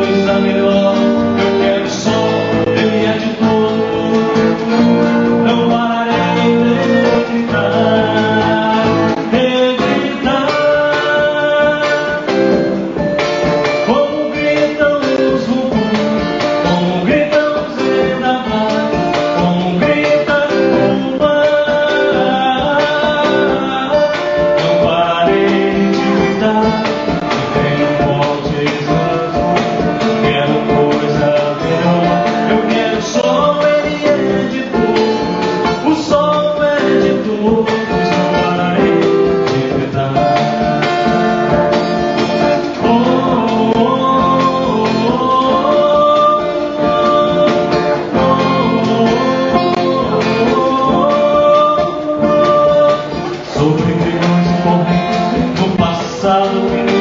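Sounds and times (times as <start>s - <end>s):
live guitar music: 0.0s - 57.0s.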